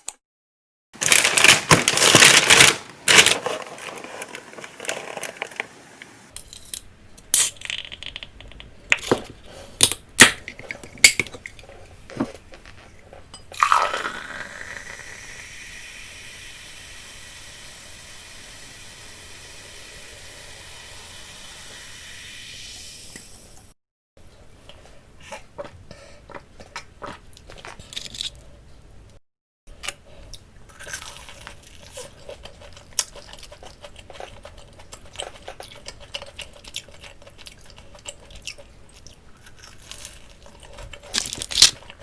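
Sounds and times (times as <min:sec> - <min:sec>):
packaging crinkling and tearing: 0:01.0 - 0:05.7, 0:39.6 - 0:42.0
steady whirring hiss: 0:14.5 - 0:23.6.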